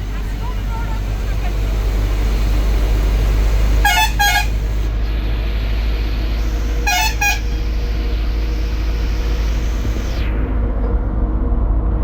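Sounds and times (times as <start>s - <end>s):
bus engine rumble and road noise: 0.0s - 12.0s
bus horn short high toots: 3.7s - 4.8s, 6.7s - 7.8s.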